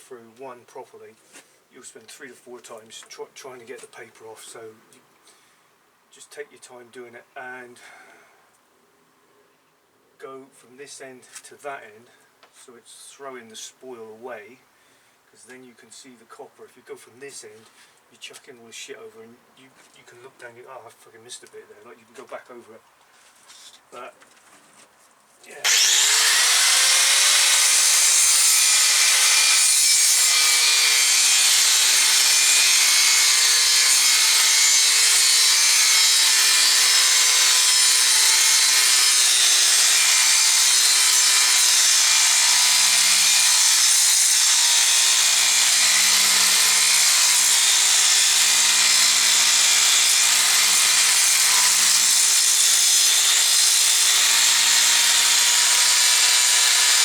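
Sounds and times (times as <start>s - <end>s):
angle grinder cutting cable: 25.6s - 57.0s.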